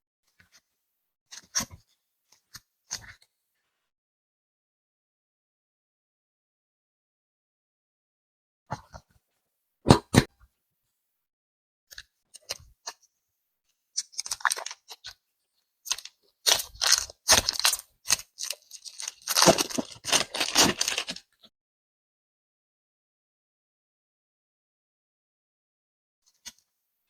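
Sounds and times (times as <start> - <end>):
plastic packaging crinkling and tearing: 14.0 - 15.1, 15.9 - 21.3.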